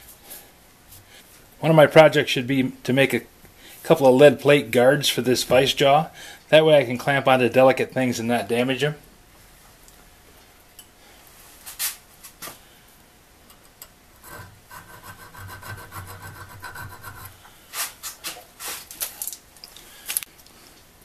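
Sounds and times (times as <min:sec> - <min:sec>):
steady hum: 0:00.0 - 0:18.1
hand file rasping on steel: 0:14.2 - 0:17.4.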